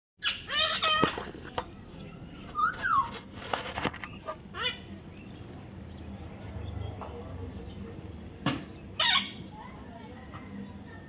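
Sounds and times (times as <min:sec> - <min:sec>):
parrot squawking: 0:00.2 - 0:01.2, 0:04.5 - 0:04.9, 0:09.0 - 0:09.4.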